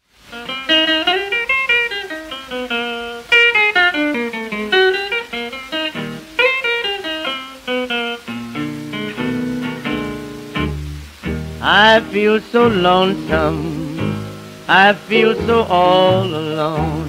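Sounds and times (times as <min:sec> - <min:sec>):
faint record hiss: 0:00.0 - 0:17.0
blues guitar plucked runs: 0:08.3 - 0:17.0.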